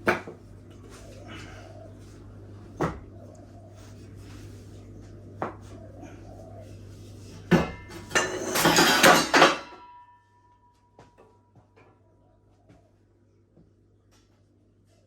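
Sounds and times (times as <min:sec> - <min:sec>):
steel parts clanking: 0:08.0 - 0:09.9.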